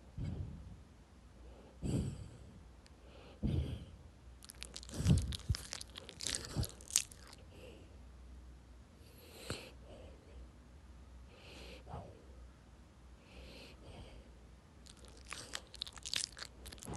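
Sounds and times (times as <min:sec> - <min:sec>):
dog wet smacking and chewing: 0:04.4 - 0:07.4, 0:14.8 - 0:16.9.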